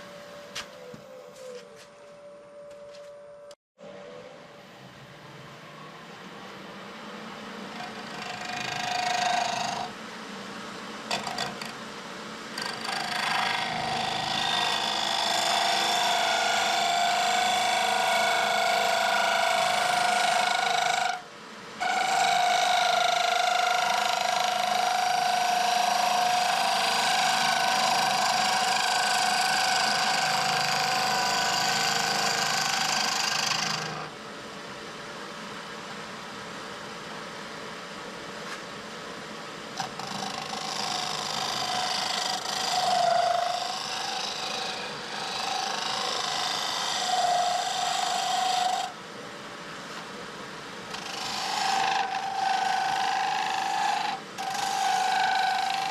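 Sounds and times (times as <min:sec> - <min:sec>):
power tool working wood: 0:07.5 - 0:10.0, 0:11.1 - 0:11.8, 0:12.5 - 0:34.2, 0:39.8 - 0:49.0, 0:50.9 - 0:55.9.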